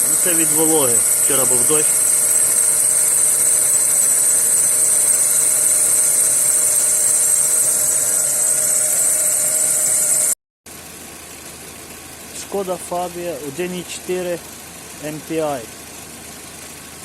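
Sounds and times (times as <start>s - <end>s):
drive belt whistling: 0.0s - 10.4s
car engine idling: 0.0s - 17.0s.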